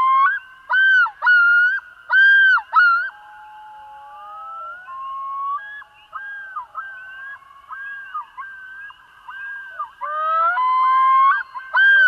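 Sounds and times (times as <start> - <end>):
loon yodel calls: 2.8 - 12.0.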